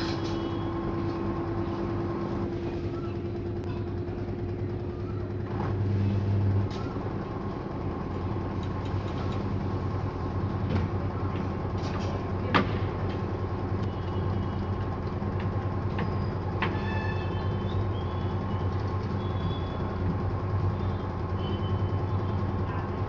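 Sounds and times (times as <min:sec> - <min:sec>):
washing machine spinning: 0:00.4 - 0:23.0.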